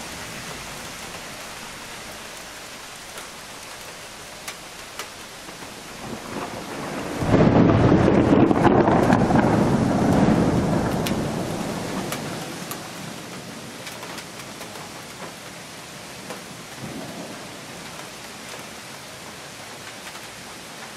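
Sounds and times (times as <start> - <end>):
steady rain falling: 0.0 - 20.9
raindrops ticking: 0.4 - 20.9
thunder rumbling: 5.8 - 13.8, 16.8 - 18.0.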